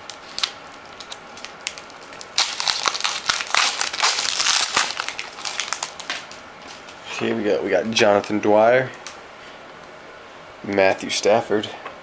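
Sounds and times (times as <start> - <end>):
plastic wrapper crinkling: 0.0 - 6.8.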